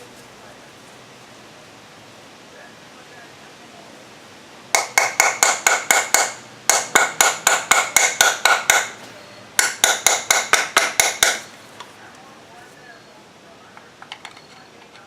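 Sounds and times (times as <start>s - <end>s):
hammer striking metal: 4.7s - 9.0s, 9.6s - 11.5s.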